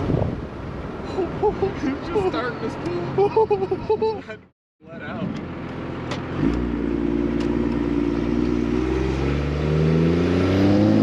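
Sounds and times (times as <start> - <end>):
diesel engine accelerating: 5.3 - 11.0.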